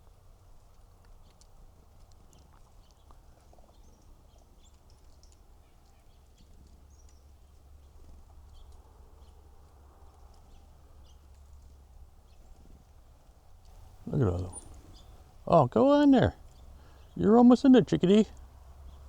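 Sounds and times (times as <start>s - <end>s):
low outdoor rumble: 13.7s - 19.0s
chickadees chirping: 13.8s - 19.0s.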